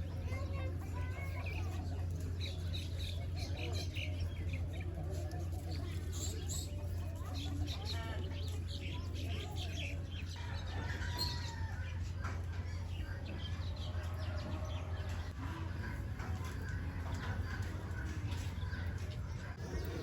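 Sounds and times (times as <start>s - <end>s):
chickens clucking: 10.4s - 20.0s.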